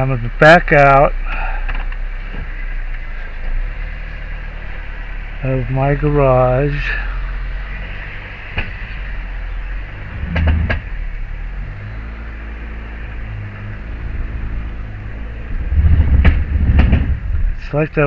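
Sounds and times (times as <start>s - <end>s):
car engine running: 0.0s - 18.0s
loud grinding clunk: 10.0s - 11.0s, 15.6s - 17.4s
knocks: 10.2s - 10.9s, 16.0s - 17.2s.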